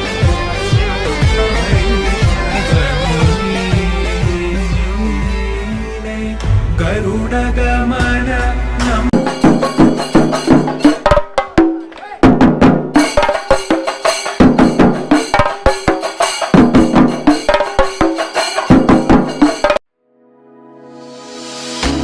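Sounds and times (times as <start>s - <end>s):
pitched musical accompaniment: 0.0s - 11.9s
fast loud drum beats: 8.0s - 19.8s.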